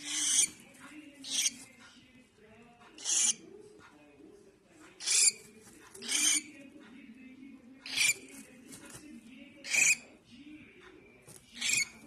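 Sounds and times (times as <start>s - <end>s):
bird chick raspy hissing calls: 3.0s - 3.4s.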